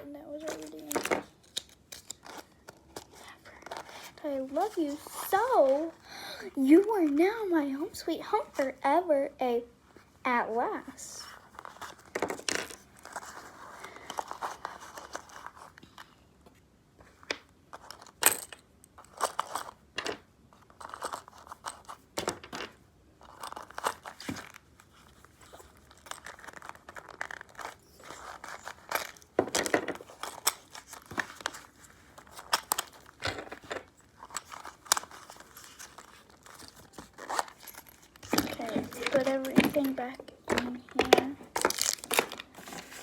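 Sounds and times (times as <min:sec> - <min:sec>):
toy pieces clicking and clacking: 0:25.6 - 0:42.5.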